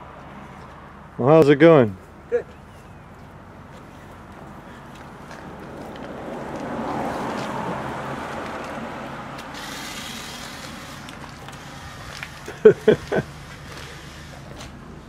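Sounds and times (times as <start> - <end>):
vehicle passing rumble: 0.0 - 15.0
hiss: 9.5 - 14.7.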